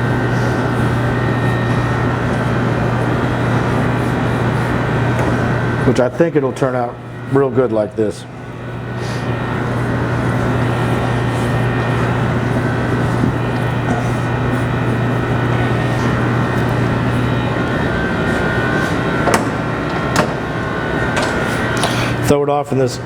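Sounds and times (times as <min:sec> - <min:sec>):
machine hum: 0:00.0 - 0:23.0
sharp knocks: 0:18.8 - 0:20.5.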